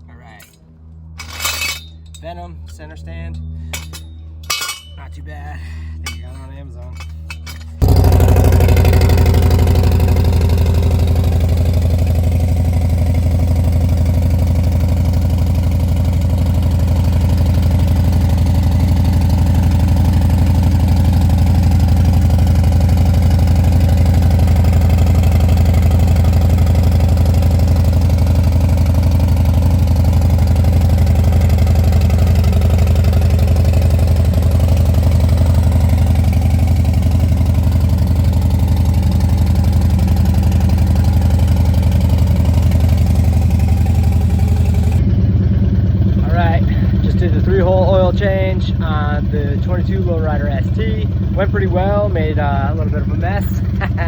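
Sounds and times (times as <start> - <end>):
motorcycle engine idling: 6.9 - 54.0.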